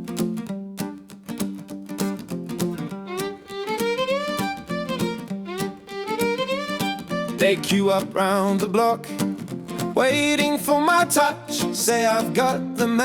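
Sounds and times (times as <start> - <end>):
picked acoustic guitar: 0.0 - 13.0
fiddle sliding upward: 3.1 - 7.5.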